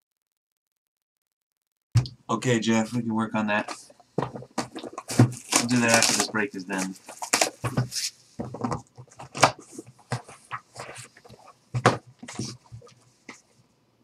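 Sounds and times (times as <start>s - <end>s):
trading cards rustling and clicking: 3.6s - 11.4s.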